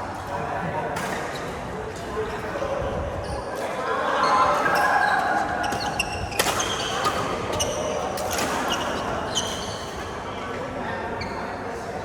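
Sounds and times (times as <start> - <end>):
shoes squeaking on court floor: 4.2 - 10.2, 11.2 - 11.6.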